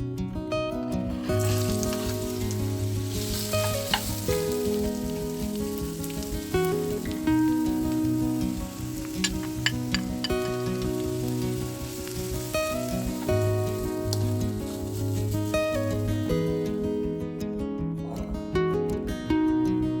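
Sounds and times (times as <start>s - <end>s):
soft background music: 0.0s - 20.0s
food sizzling in a frying pan: 1.0s - 16.8s
utensil clicking against pan: 3.2s - 4.3s, 9.0s - 11.0s.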